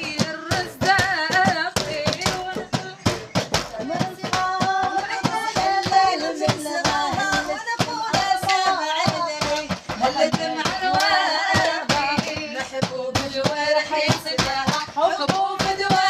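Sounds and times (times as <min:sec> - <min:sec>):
hand percussion beat: 0:00.0 - 0:16.0.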